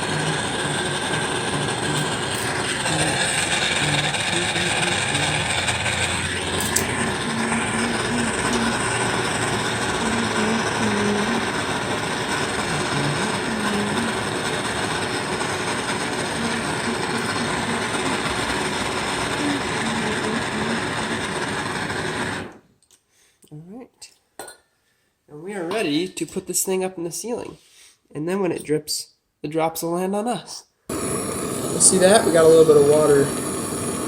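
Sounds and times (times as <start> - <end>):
torch flame hissing: 0.0 - 22.6, 30.9 - 34.0.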